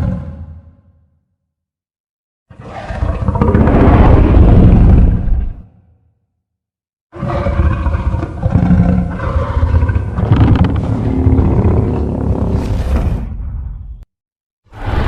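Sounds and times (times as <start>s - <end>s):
long loud monster roar: 7.1s - 12.7s.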